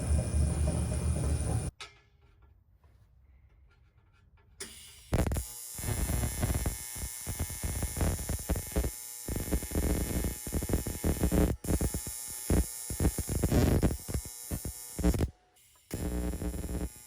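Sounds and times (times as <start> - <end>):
welding arc buzzing and crackling: 4.7 - 17.0.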